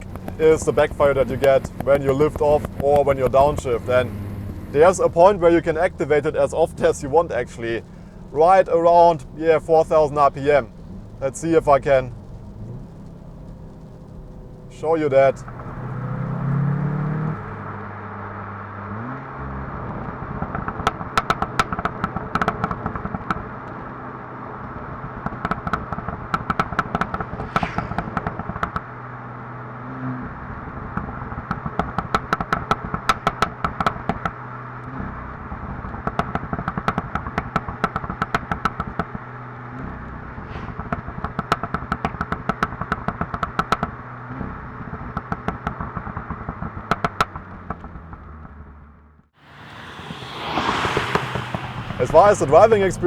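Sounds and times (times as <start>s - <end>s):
car exhaust crackling and popping: 0.0s - 53.0s
engine throttle blips: 0.0s - 53.0s.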